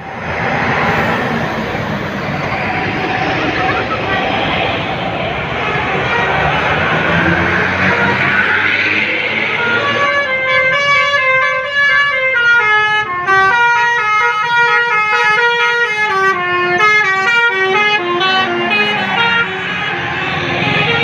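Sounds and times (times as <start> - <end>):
bus horn playing a melody: 5.6 - 6.6, 9.6 - 21.0.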